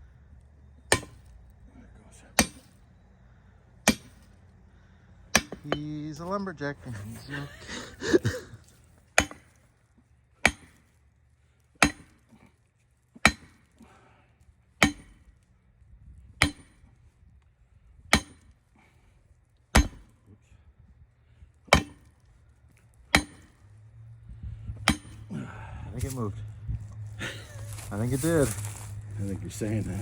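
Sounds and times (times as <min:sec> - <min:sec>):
hammer striking metal: 0:00.9 - 0:01.3, 0:02.4 - 0:02.8, 0:03.9 - 0:04.2, 0:05.4 - 0:06.0, 0:09.2 - 0:09.5, 0:10.4 - 0:10.8, 0:11.8 - 0:12.2, 0:13.2 - 0:13.6, 0:14.8 - 0:15.2, 0:16.4 - 0:16.8, 0:18.2 - 0:18.5, 0:19.8 - 0:20.1, 0:21.7 - 0:22.1, 0:23.2 - 0:23.6, 0:24.8 - 0:25.3.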